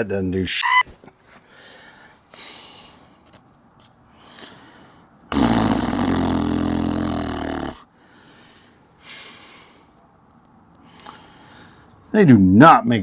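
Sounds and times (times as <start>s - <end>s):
heavy breath out: 4.2s - 9.9s
man groaning with effort: 5.3s - 7.8s.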